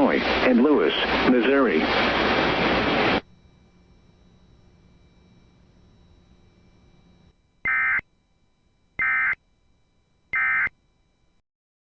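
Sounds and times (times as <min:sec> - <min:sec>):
faint radio hiss: 0:00.0 - 0:08.0
warbling digital data tones: 0:03.4 - 0:08.1, 0:09.0 - 0:09.4, 0:10.3 - 0:10.7.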